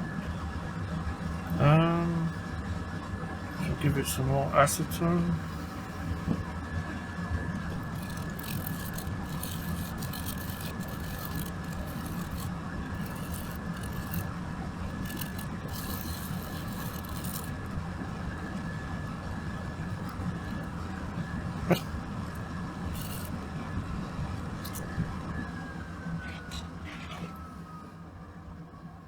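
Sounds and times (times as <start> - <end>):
steady hum: 0.0 - 29.0
rasping scrubbing strokes: 7.6 - 17.7, 22.9 - 23.3.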